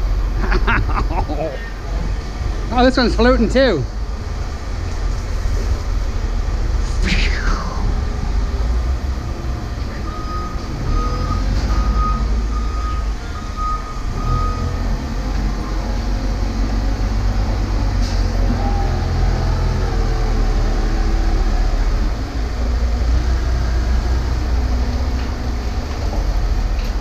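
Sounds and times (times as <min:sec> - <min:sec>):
vehicle engine rumble: 0:00.0 - 0:27.0
backup alarm beeping: 0:10.0 - 0:14.7.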